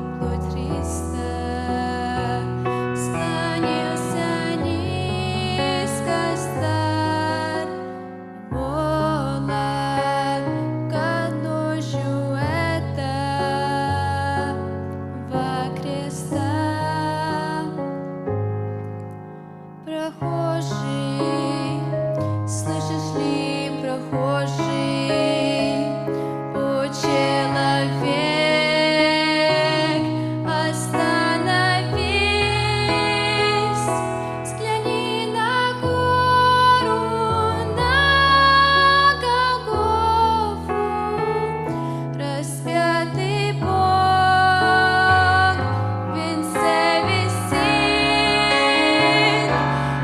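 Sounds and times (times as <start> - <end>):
soft hymn on piano and keyboard: 0.0 - 50.0.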